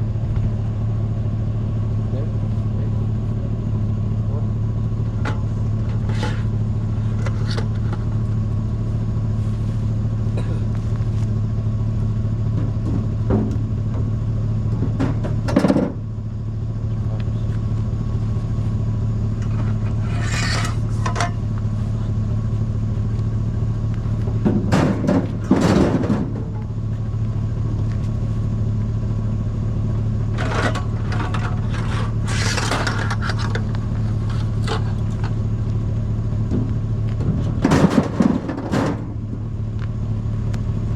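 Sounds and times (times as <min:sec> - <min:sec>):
road noise inside cab: 0:00.0 - 0:40.9
vehicle engine drone: 0:00.0 - 0:40.9
knocks and rattles: 0:14.8 - 0:16.0, 0:24.3 - 0:26.7, 0:30.4 - 0:35.4, 0:36.4 - 0:39.4.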